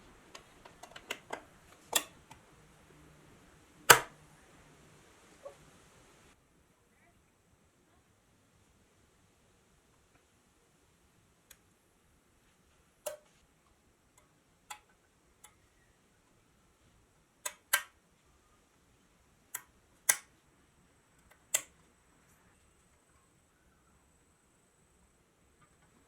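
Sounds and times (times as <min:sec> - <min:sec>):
sharp clicks and taps: 0:03.9 - 0:04.1, 0:13.0 - 0:13.4, 0:17.4 - 0:18.0.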